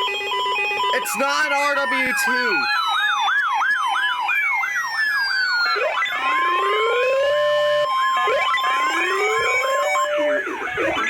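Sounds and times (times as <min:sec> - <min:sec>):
electronic siren yelp and wail: 0:00.0 - 0:11.0
steady high tone: 0:00.9 - 0:02.8.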